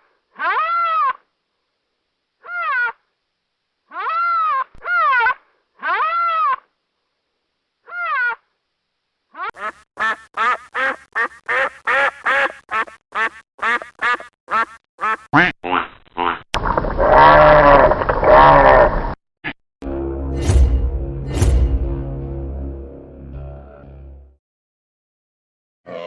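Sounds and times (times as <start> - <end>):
duck quacking: 9.4 - 16.4
loud different sound: 19.8 - 24.4.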